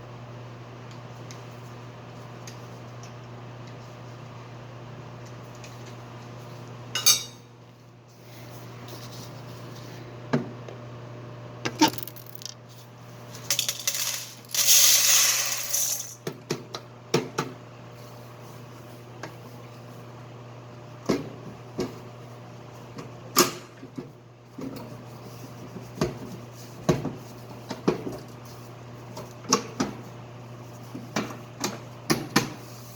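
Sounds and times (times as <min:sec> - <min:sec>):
metal parts clinking: 0:11.7 - 0:12.6, 0:13.4 - 0:16.2.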